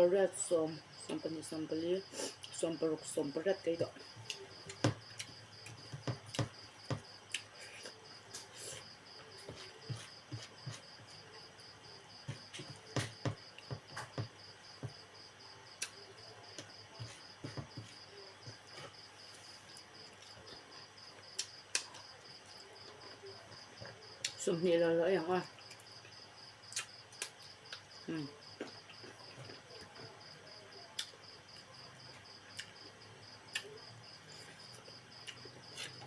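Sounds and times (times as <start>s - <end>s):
cricket chirping: 0.0s - 36.0s
person chewing: 7.3s - 10.7s, 34.4s - 36.0s.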